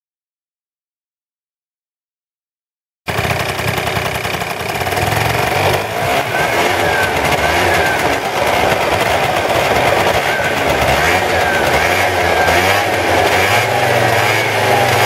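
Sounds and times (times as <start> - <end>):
scooter engine running: 3.1 - 15.0.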